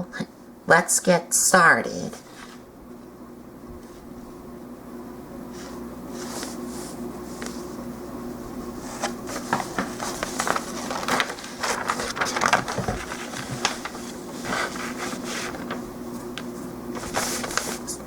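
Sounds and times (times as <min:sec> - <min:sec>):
faint steady hum: 0:00.0 - 0:18.0
packaging rustling: 0:08.9 - 0:18.0.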